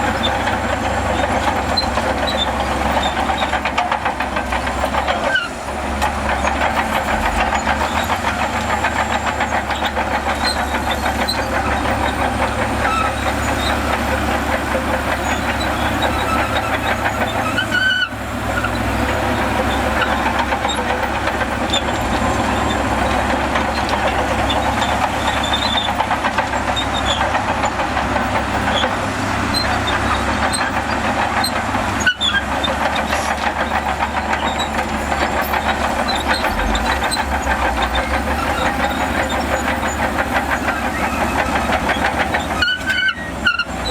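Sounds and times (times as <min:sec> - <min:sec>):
bulldozer diesel engine running: 0:00.0 - 0:43.9
dense rattle: 0:00.0 - 0:43.9.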